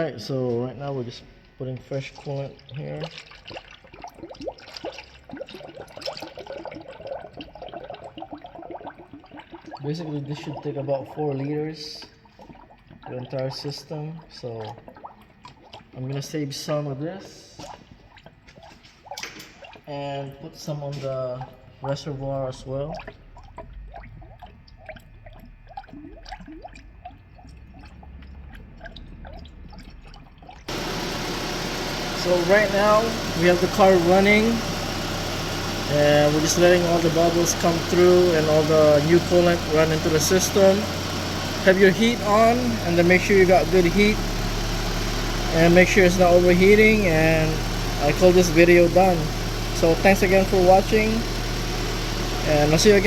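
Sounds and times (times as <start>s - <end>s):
liquid pouring with gurgles: 1.0s - 53.0s
small splashes: 1.2s - 53.0s
engine and fan noise: 27.4s - 53.0s.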